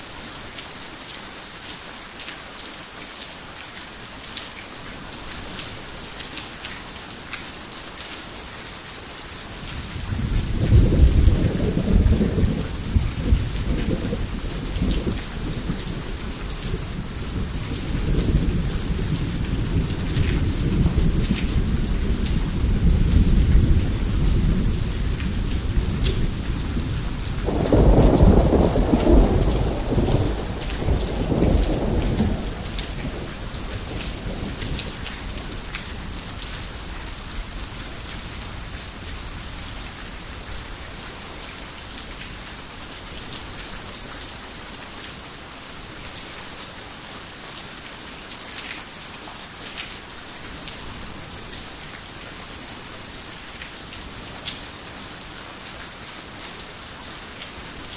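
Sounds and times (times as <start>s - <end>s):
heavy rain: 0.0s - 57.9s
thunder rumbling: 17.4s - 34.9s.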